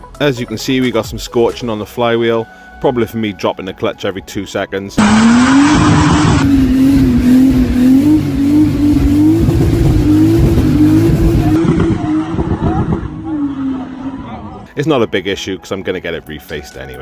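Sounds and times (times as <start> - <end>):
engine running loudly: 5.0 - 14.6.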